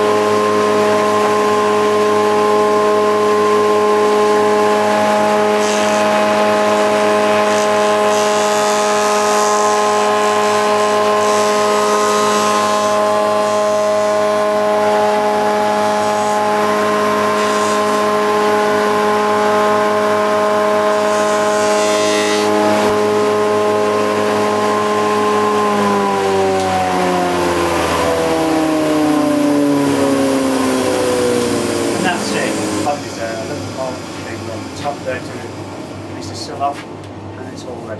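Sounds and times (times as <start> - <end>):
machine spinning down: 0.0 - 35.7
spindle moulder humming: 0.0 - 37.8
cutter hissing through timber: 3.4 - 25.8, 29.1 - 36.0.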